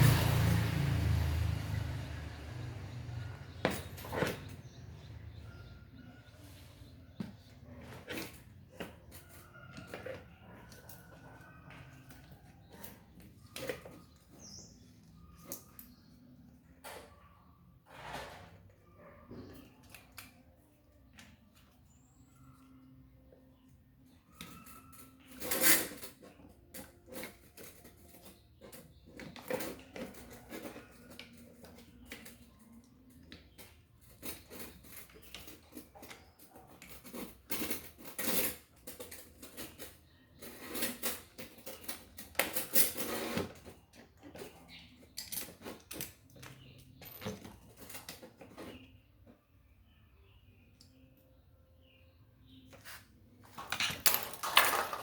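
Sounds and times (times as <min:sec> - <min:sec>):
metal parts and tools clinking: 0:24.4 - 0:48.9, 0:53.4 - 0:55.0.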